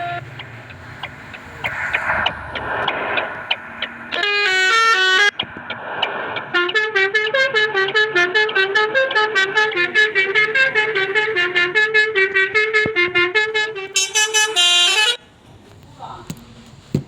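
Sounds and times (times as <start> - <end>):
multi-tone musical horn melody: 6.5 - 15.3.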